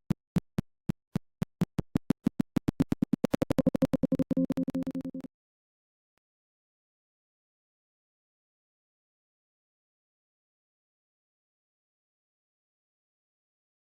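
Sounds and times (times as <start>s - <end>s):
synthesized ticks speeding into buzz: 0.0s - 5.3s.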